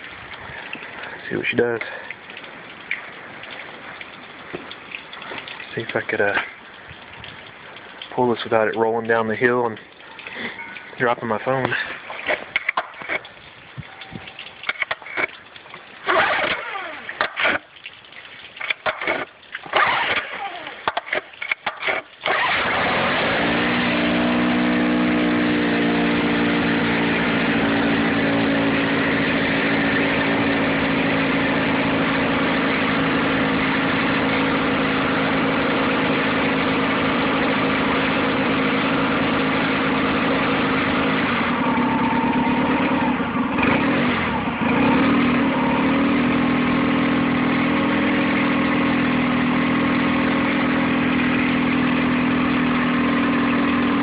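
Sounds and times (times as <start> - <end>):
outboard motor idling roughly: 13.9 - 17.8, 18.5 - 54.0.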